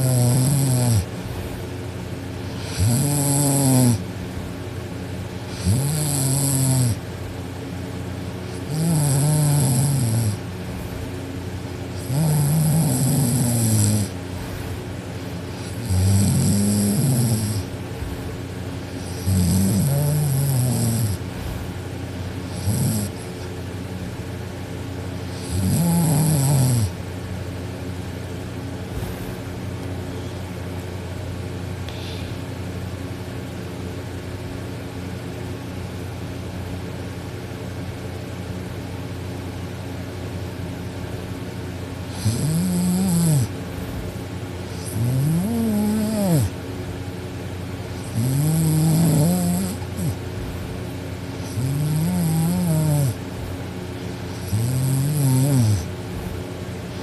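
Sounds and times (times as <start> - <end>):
girl snoring loudly: 0.0 - 1.1, 2.5 - 4.0, 5.6 - 7.0, 8.6 - 10.4, 12.0 - 14.2, 15.6 - 17.7, 19.0 - 21.2, 22.5 - 23.2, 25.4 - 27.0, 42.1 - 43.5, 44.8 - 46.6, 48.0 - 50.2, 51.4 - 53.2, 54.3 - 55.9
steady hum: 0.0 - 57.0.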